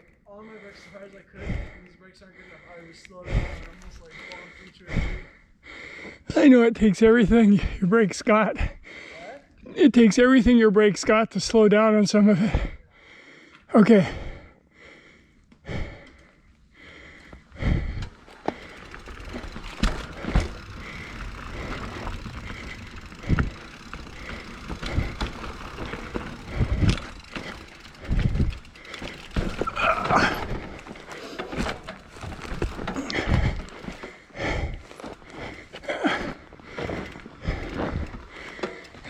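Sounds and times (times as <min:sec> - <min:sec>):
bike tyres grinding over rocks: 0:17.3 - 0:39.0
bike knocks and rattles: 0:17.4 - 0:39.0.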